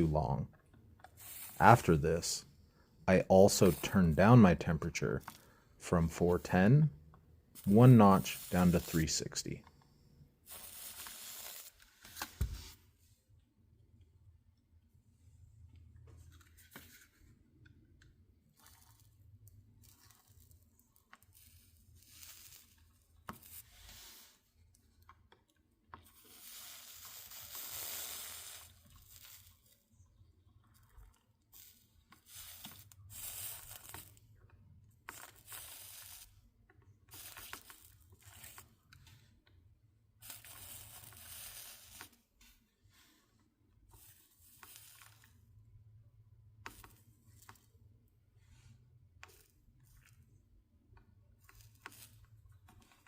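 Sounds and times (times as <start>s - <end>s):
soldering iron sizzling: 1.1s - 2.4s, 7.6s - 9.6s, 10.4s - 12.7s, 21.3s - 22.8s, 26.2s - 29.8s, 31.5s - 34.2s, 35.1s - 36.4s, 37.1s - 38.7s, 40.2s - 42.2s.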